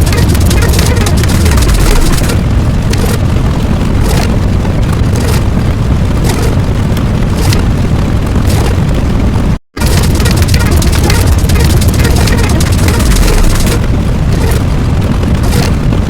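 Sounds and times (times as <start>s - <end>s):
sharp bursts: 0.0s - 3.2s, 9.8s - 14.6s
booming rumble: 0.0s - 16.0s.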